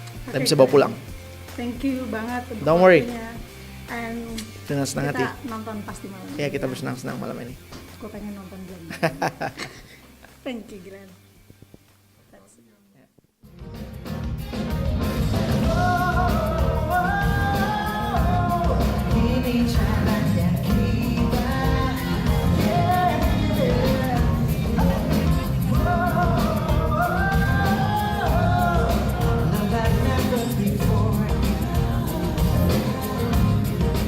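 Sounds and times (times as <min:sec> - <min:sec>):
pop-rock song with singing: 0:13.8 - 0:34.0.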